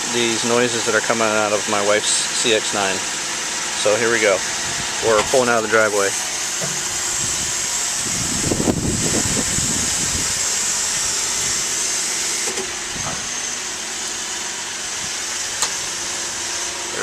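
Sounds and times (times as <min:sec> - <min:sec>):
car cabin hiss: 0:04.1 - 0:17.0.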